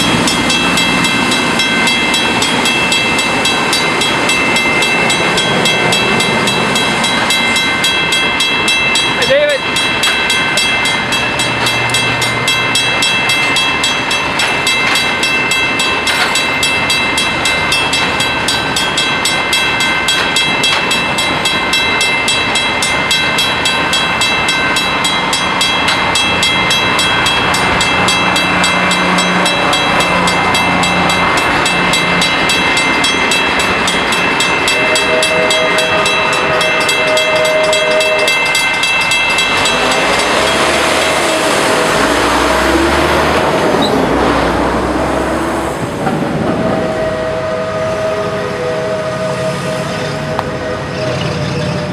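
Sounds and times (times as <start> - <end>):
steam locomotives chugging: 0.0 - 51.9
steam whistle chord: 34.7 - 38.7, 39.4 - 43.9, 46.6 - 51.9.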